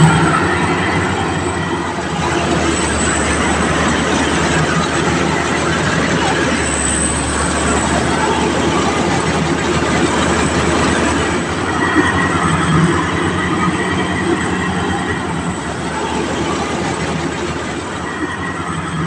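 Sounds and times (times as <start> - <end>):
combine harvester running: 0.0 - 19.0.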